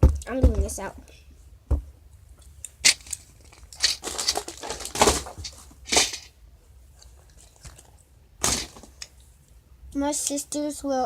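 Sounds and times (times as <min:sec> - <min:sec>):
packaging rustling and crinkling: 0:02.8 - 0:06.3.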